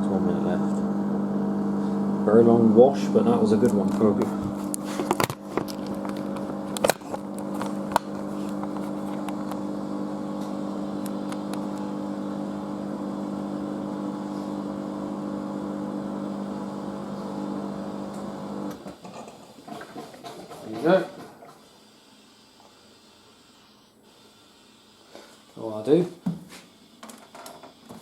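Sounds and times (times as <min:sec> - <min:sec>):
washing machine spin whine: 0:00.0 - 0:28.0.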